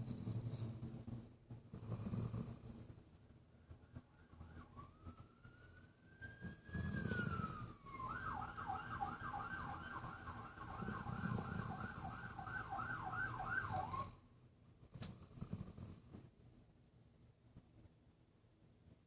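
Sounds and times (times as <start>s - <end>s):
emergency vehicle siren: 3.6s - 14.2s.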